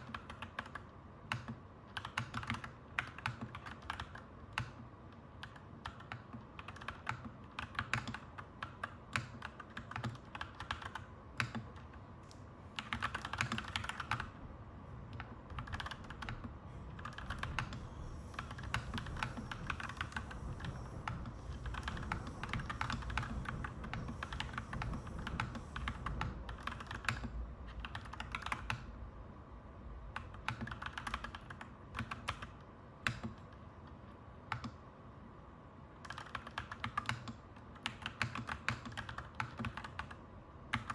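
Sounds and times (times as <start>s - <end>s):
mechanical keyboard typing: 0.0s - 14.3s, 15.1s - 28.9s, 30.1s - 34.8s, 36.0s - 40.9s
low background rumble: 12.5s - 32.6s.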